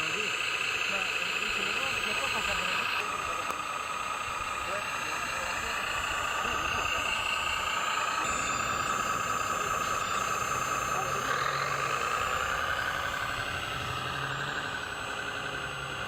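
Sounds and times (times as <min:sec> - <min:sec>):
electric motors whining: 0:00.0 - 0:16.0.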